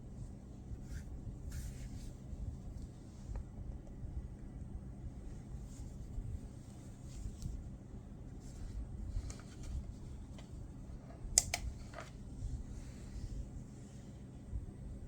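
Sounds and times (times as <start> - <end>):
low room hum: 0.0 - 15.0
small clicks from handling: 11.3 - 12.1.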